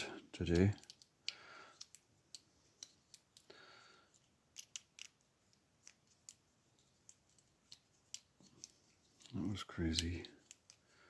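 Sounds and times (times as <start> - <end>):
lock and tools clicking: 0.5 - 6.4.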